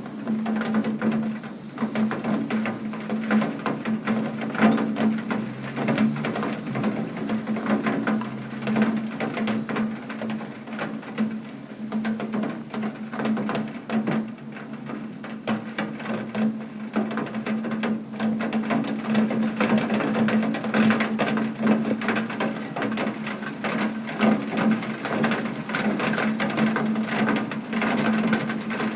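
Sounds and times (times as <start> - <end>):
rain drops on hard surface: 0.0 - 28.9.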